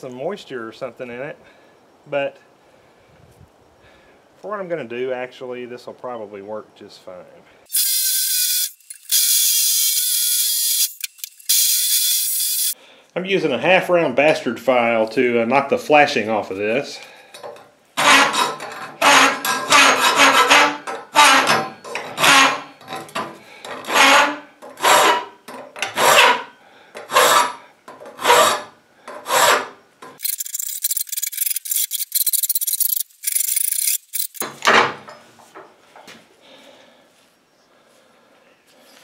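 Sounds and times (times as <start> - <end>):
file rasping on metal: 18.0 - 23.1, 23.8 - 29.8.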